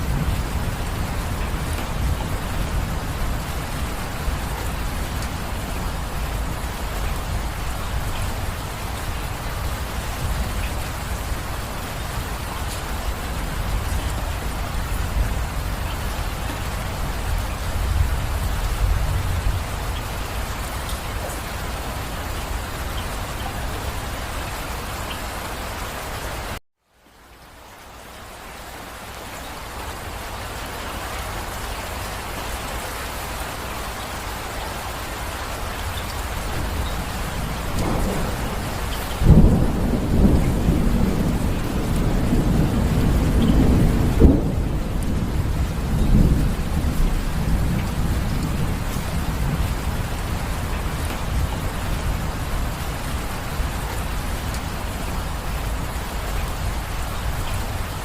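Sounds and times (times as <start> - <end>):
thunder rumbling: 0.0 - 24.4, 35.8 - 58.0
steady rain falling: 0.0 - 58.0
loud thunder crack: 36.5 - 50.0.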